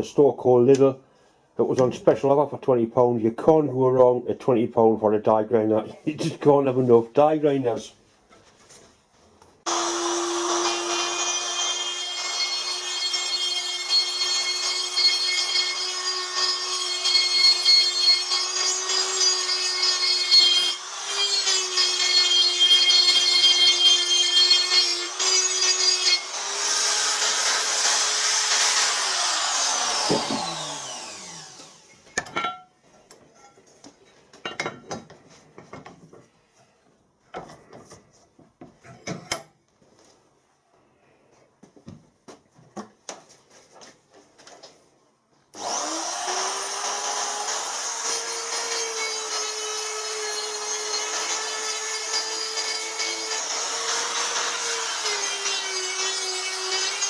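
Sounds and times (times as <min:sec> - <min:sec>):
die grinder motor whine: 0:09.7 - 0:32.0, 0:45.6 - 0:57.0.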